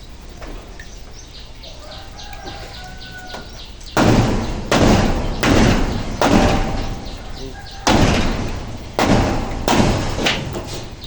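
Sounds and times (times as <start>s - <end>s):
birds chirping: 0.0s - 11.0s
loud heavy thuds: 3.0s - 11.0s.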